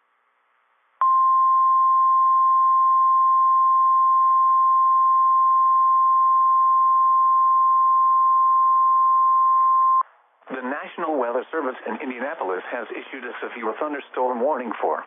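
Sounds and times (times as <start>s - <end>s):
faint radio hiss: 10.0s - 15.0s.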